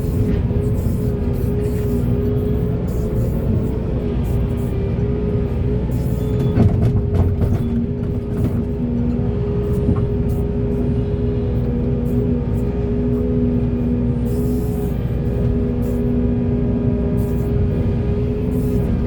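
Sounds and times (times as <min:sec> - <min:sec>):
diesel engine running: 0:00.0 - 0:19.0
hydraulic whine: 0:00.0 - 0:19.0.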